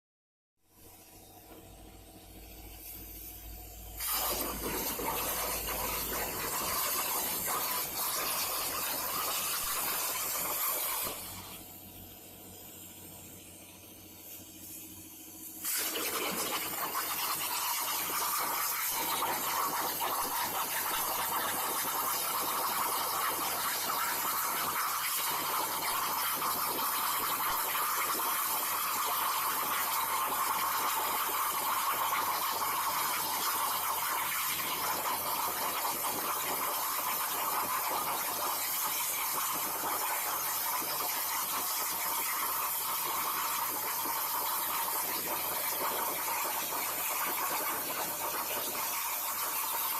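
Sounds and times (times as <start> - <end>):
plasma torch arc hissing: 0.7 - 49.9.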